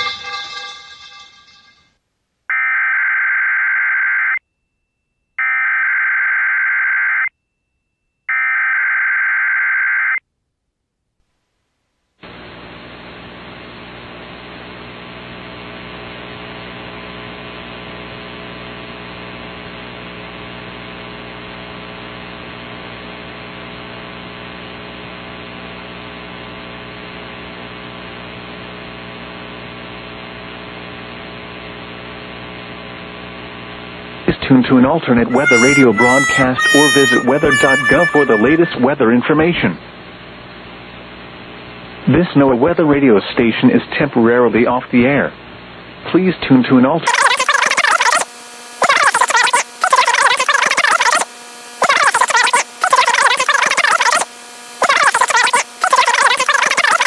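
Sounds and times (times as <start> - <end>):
radio static hiss: 47.1 - 57.0
raspy digital data tones: 47.1 - 57.0.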